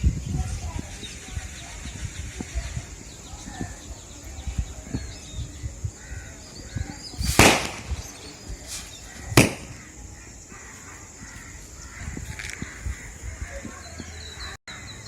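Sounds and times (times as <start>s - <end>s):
firecracker bangs: 7.2s - 10.0s.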